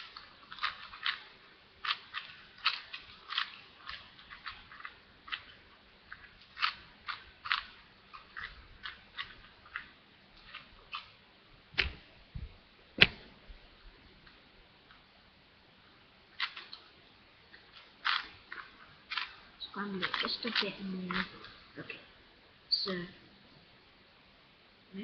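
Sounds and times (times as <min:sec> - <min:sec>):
puzzle cube clicking: 0:00.0 - 0:11.2, 0:11.8 - 0:12.0, 0:16.4 - 0:16.9, 0:17.5 - 0:19.4, 0:20.0 - 0:21.5.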